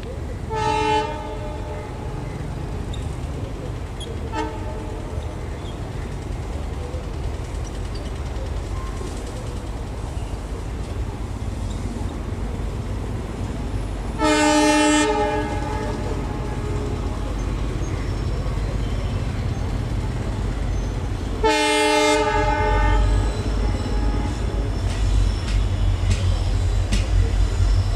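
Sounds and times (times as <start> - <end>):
diesel locomotive engine rumbling: 0.0 - 27.9
train horn blasts: 0.5 - 2.3, 4.3 - 5.2, 14.2 - 17.2, 21.4 - 26.9.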